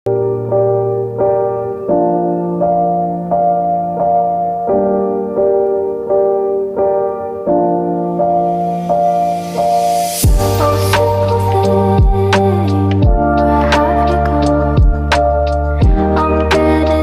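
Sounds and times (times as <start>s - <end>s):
slow piano-like keyboard music: 0.1s - 17.0s.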